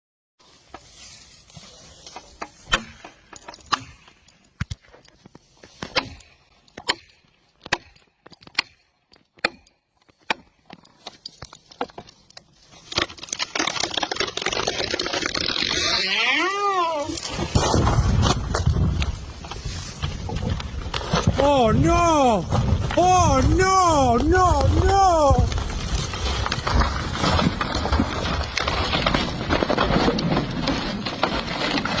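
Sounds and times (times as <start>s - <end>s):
wood cracking and splintering: 2.0s - 32.0s
axe chopping tree trunk: 2.4s - 4.1s, 5.8s - 11.2s
person shouting: 16.0s - 17.2s, 21.4s - 25.6s.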